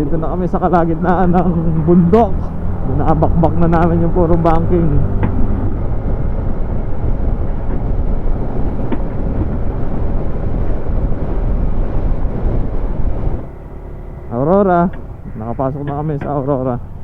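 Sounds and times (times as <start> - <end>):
wind on microphone: 0.0 - 13.5
road noise: 0.0 - 17.0
scooter engine: 0.0 - 17.0.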